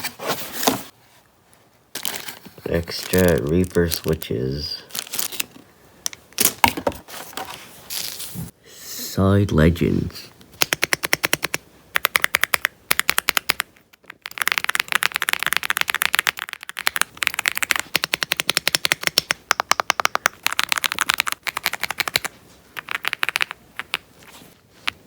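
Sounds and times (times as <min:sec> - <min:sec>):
mechanical keyboard typing: 0:10.6 - 0:24.0.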